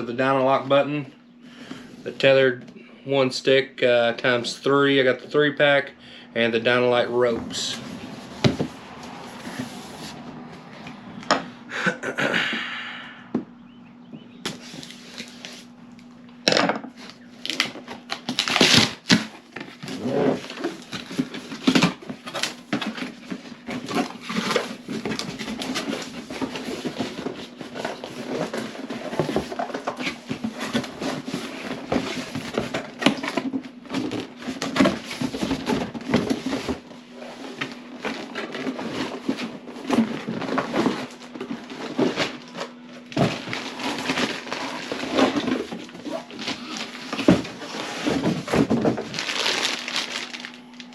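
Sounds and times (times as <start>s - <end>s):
faint steady hum: 0.0s - 50.9s
packaging rustling and crinkling: 14.4s - 15.8s, 17.0s - 50.9s.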